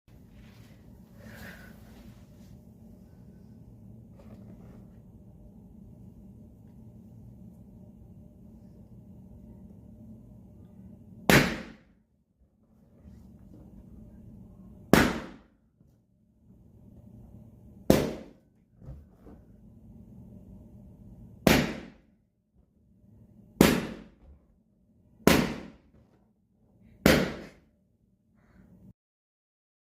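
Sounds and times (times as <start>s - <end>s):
quiet low noise: 0.1s - 11.3s, 12.2s - 21.5s.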